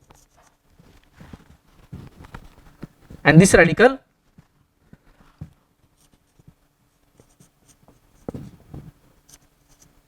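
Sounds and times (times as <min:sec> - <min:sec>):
pen scratching while writing: 0:07.2 - 0:10.0.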